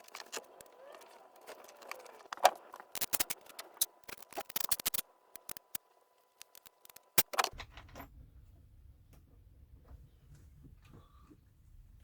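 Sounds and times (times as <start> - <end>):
clicks and crackles of handling materials: 0.0 - 8.0
low steady hum: 0.0 - 12.0.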